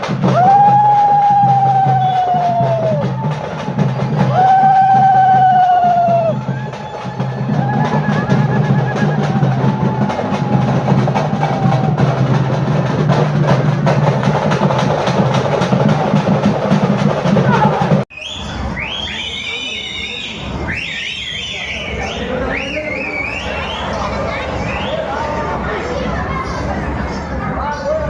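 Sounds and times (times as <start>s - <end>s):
percussion ensemble drumming: 0.0s - 18.1s.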